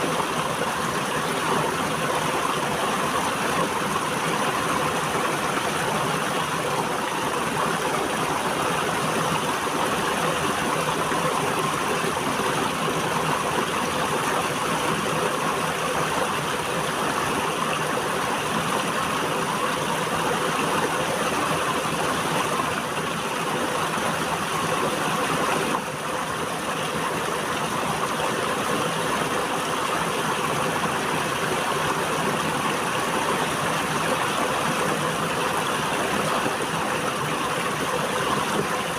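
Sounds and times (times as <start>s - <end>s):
river water flowing: 0.0s - 38.9s.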